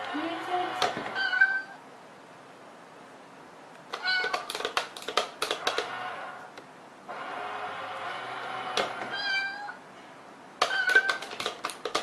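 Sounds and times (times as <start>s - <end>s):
cat meowing: 1.1s - 1.8s, 3.9s - 4.5s, 9.1s - 9.8s, 10.6s - 11.3s
sharp clicks or knocks: 3.8s - 6.7s, 8.0s - 9.1s, 10.6s - 12.0s.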